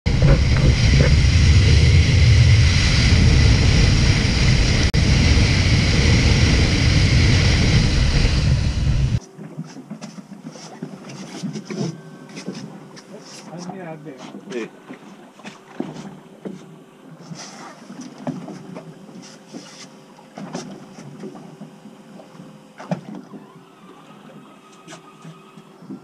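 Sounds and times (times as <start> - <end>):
loud rumbling rushing noise: 0.1 - 9.2.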